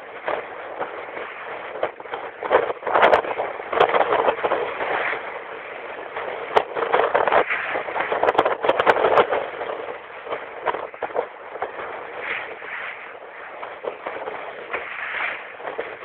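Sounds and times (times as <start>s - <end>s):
rushing wind: 0.0s - 16.0s
boat knocking and rattling: 0.1s - 5.1s, 6.2s - 12.2s.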